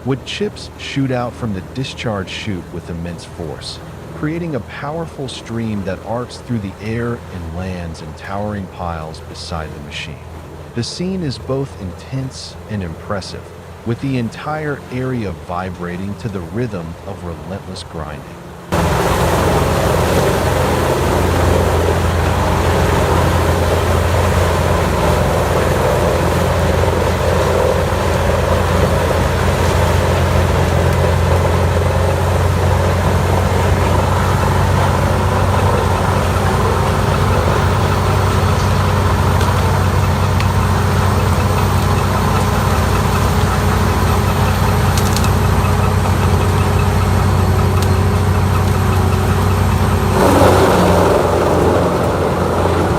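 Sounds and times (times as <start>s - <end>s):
diesel engine humming: 0.0s - 52.9s
wood grinder grinding: 18.7s - 52.9s.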